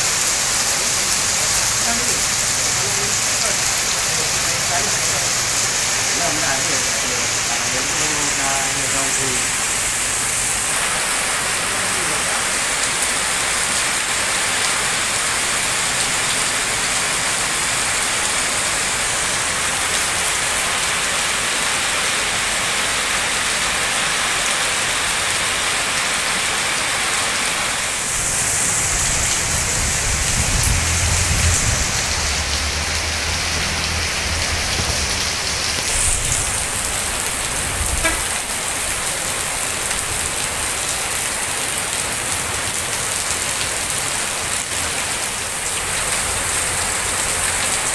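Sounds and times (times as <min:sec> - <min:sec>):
heavy rain falling: 0:00.0 - 0:47.9.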